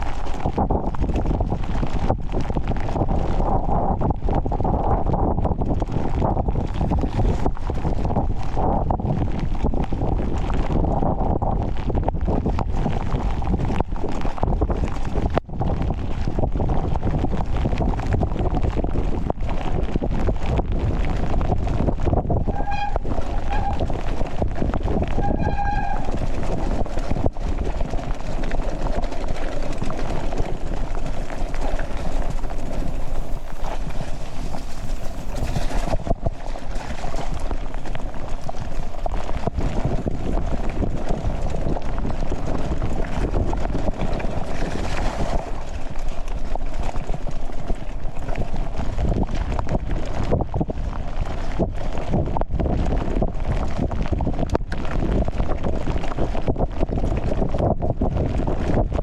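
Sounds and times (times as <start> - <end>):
bike tyre and trail noise: 0.0 - 59.0
wind on microphone: 0.0 - 59.0
short high squeals: 22.5 - 23.8, 25.2 - 26.2.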